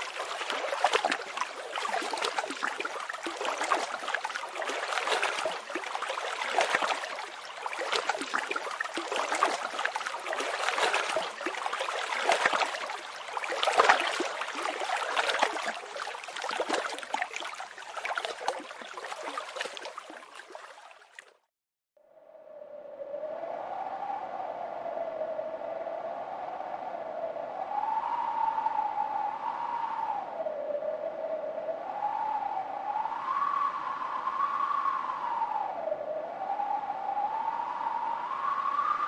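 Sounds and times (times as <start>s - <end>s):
stream water gurgling and splashing: 0.0s - 21.5s.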